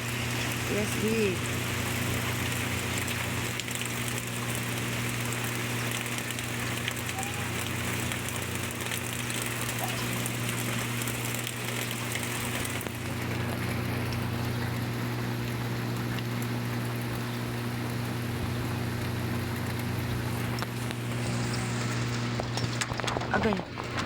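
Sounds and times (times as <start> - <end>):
steady rain falling: 0.0 - 24.0.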